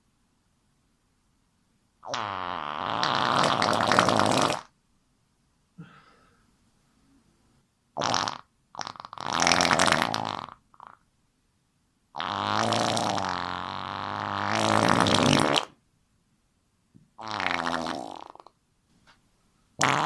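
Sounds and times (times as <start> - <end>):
fart sounds: 2.0 - 4.7, 8.0 - 11.0, 12.2 - 15.8, 17.2 - 18.6, 19.8 - 20.0.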